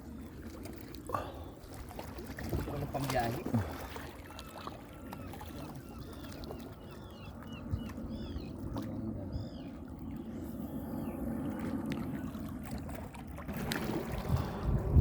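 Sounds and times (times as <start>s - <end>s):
low background rumble: 8.0s - 15.0s.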